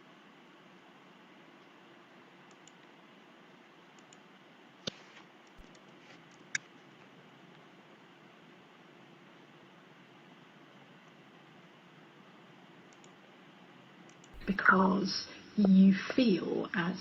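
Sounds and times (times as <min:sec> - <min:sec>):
faint steady hiss: 0:00.0 - 0:17.0
computer mouse clicks: 0:02.5 - 0:02.9, 0:04.0 - 0:06.7, 0:12.9 - 0:13.2, 0:14.0 - 0:14.5.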